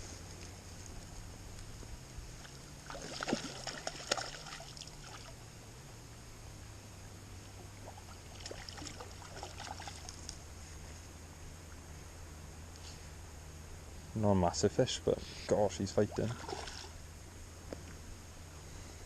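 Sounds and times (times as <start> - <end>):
steady low rumble: 0.0 - 3.1, 4.6 - 19.0
fish splashing in water: 2.4 - 5.4, 7.8 - 10.3, 16.1 - 17.0.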